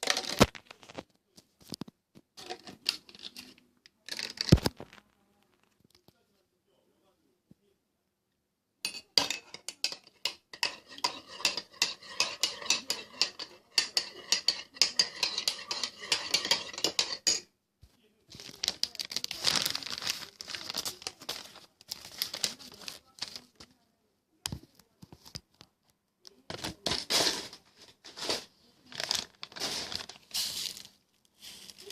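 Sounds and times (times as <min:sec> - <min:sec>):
spoon clinking against cup: 0:08.9 - 0:17.5
packaging crinkling: 0:18.3 - 0:23.5.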